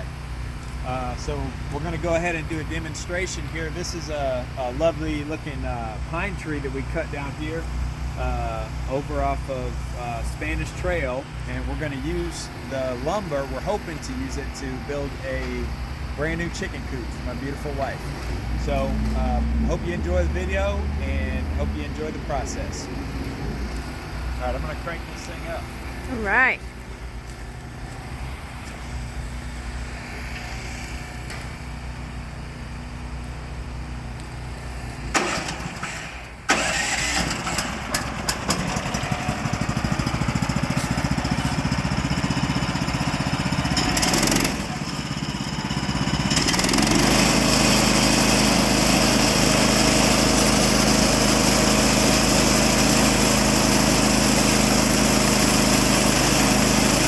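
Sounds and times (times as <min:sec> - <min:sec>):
sawmill engine starting and running: 0:00.0 - 0:57.0.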